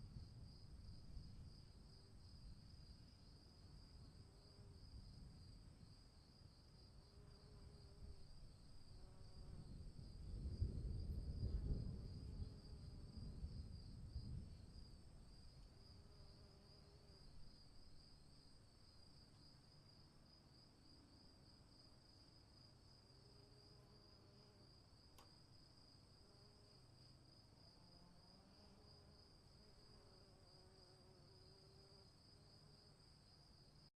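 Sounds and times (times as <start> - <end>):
faint click: 25.1 - 25.4.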